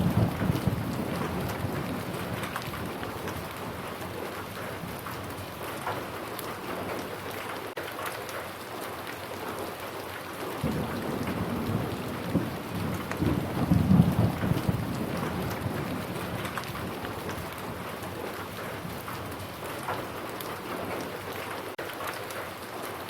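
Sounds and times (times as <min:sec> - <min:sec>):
thunder rumble: 0:00.0 - 0:06.0, 0:10.6 - 0:21.1
steady rain falling: 0:00.0 - 0:23.0.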